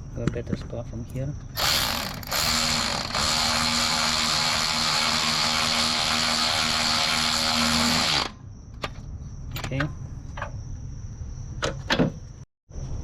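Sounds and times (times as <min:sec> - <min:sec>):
power tool spinning bolt: 0:01.6 - 0:08.4.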